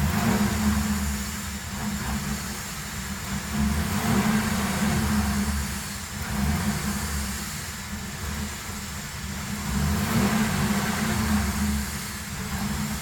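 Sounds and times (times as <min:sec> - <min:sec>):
car engine rumbling: 0:00.0 - 0:13.0.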